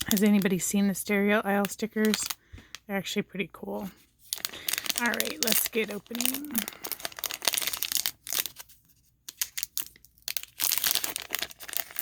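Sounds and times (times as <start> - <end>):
wrapper tearing and crinkling: 0.0 - 0.5, 2.0 - 2.4, 4.2 - 12.0.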